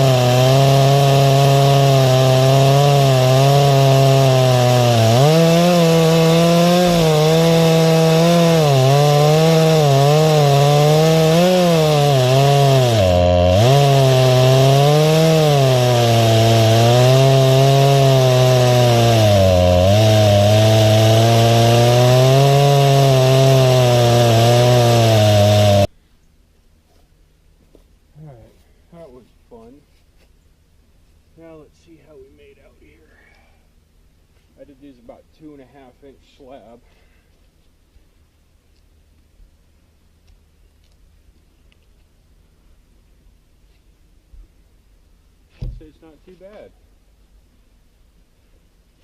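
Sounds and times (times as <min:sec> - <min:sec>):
chainsaw cutting log at full throttle: 0:00.0 - 0:25.9.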